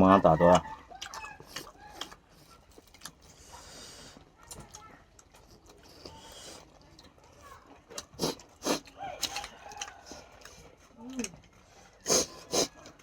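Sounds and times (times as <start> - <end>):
crisp bites and chewing: 0.6 - 3.3, 7.7 - 13.0
mouth smacks: 12.0 - 12.8.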